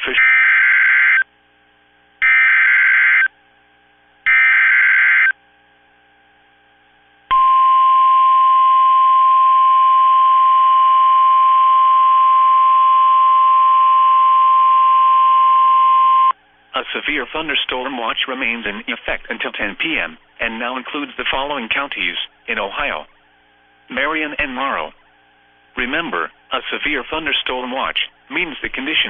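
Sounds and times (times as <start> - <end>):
steady warning alarm tone: 0.0 - 1.3, 2.2 - 3.4, 4.3 - 5.4, 7.3 - 16.4, 19.6 - 28.5.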